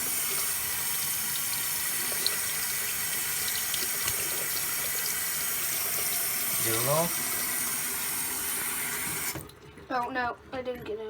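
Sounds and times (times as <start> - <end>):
tap water splashing into sink: 0.0 - 7.7, 8.6 - 10.2.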